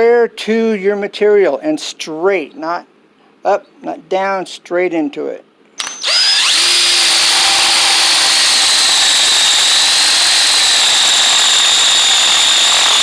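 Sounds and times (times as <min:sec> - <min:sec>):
electric drill boring into wood: 0:05.8 - 0:13.0.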